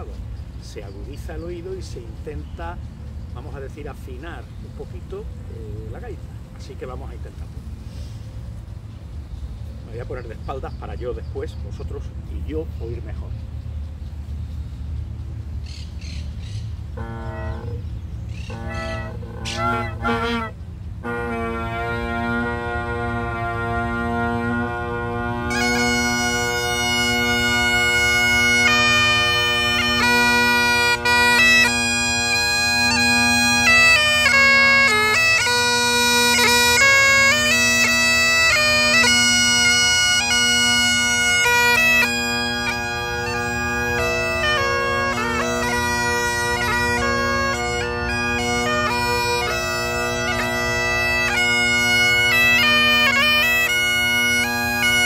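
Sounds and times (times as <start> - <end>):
bagpipe playing a tune: 16.9 - 55.0.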